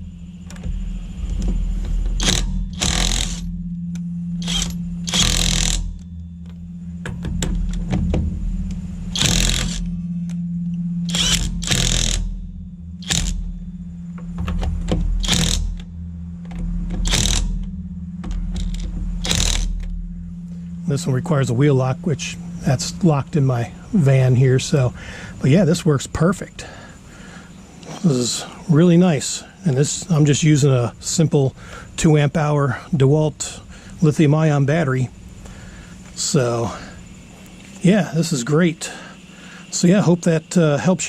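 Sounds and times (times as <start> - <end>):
impact wrench hammering: 0.0 - 10.4, 11.0 - 21.0
motor hum: 0.0 - 41.0.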